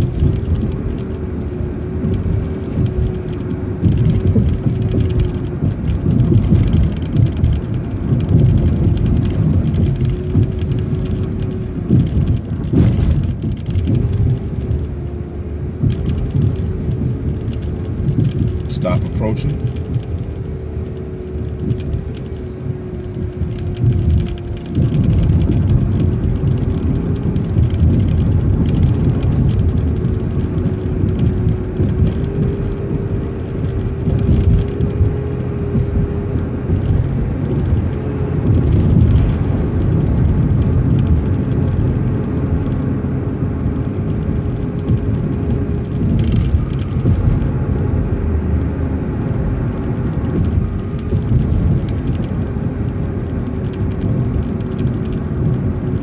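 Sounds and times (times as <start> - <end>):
bus engine and road rumble: 0.0 - 56.0.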